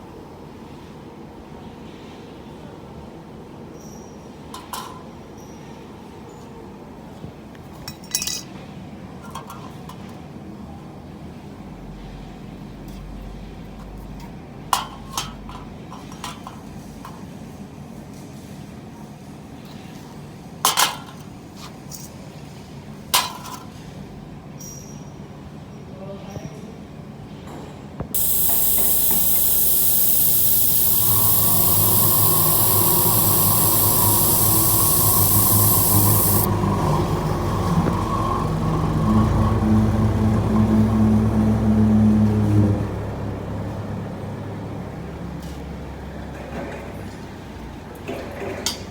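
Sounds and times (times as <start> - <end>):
sharp metallic clinks: 28.2 - 36.5
welding machine humming: 28.2 - 36.6.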